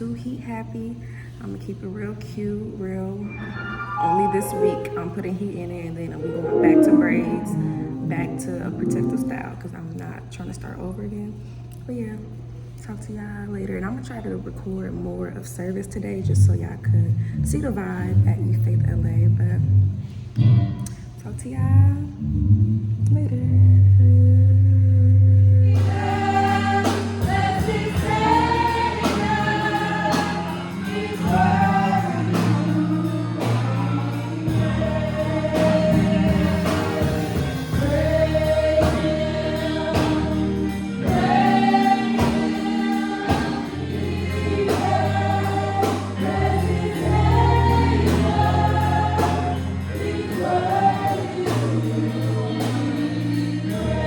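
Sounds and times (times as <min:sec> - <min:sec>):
gospel choir singing: 0:03.2 - 0:09.7, 0:25.6 - 0:54.0
band with bass and drums: 0:25.8 - 0:54.0.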